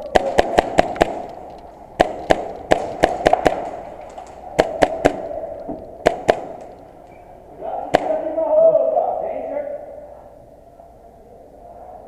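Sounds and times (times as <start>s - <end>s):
airsoft gun shots: 0.1s - 1.4s, 2.0s - 3.8s, 4.6s - 5.4s, 6.0s - 6.7s, 7.9s - 8.3s.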